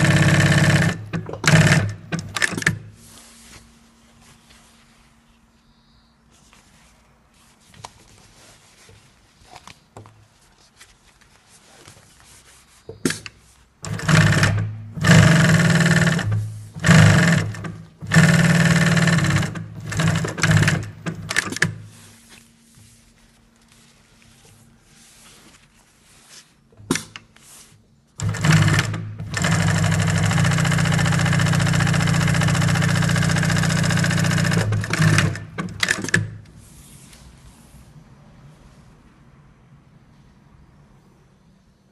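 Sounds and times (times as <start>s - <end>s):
sewing machine sewing: 0.0s - 2.8s, 13.8s - 21.9s, 28.2s - 36.4s.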